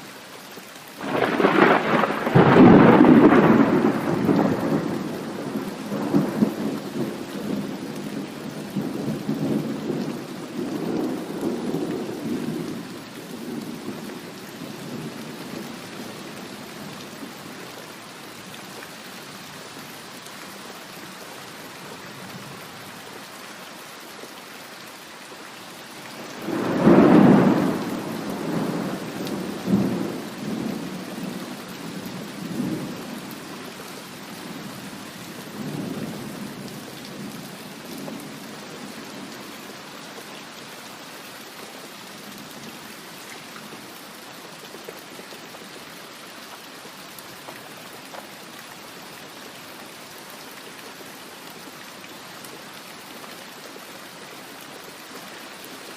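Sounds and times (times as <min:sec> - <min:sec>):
steady rain falling: 0:00.0 - 0:55.9
thunderclap rumbling: 0:01.0 - 0:07.2, 0:26.4 - 0:31.3.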